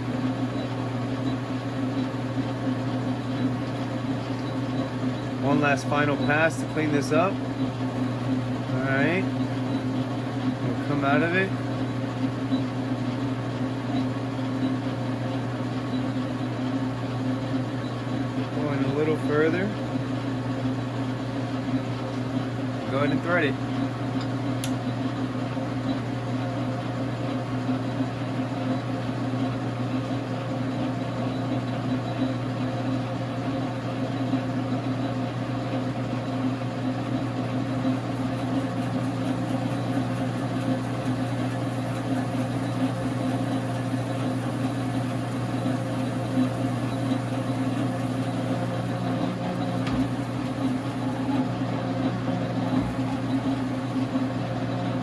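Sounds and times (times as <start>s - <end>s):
lathe humming: 0.0s - 14.9s, 36.2s - 55.0s.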